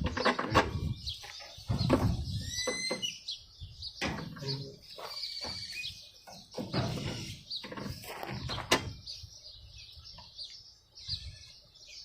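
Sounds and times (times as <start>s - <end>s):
mower parts knocking and rattling: 0.0s - 3.1s, 4.0s - 9.0s
birds chirping: 0.0s - 12.0s.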